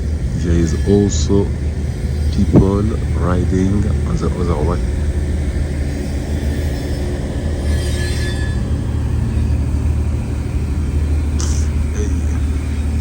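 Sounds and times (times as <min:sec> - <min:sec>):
freight train rumbling on rails: 0:00.0 - 0:13.0.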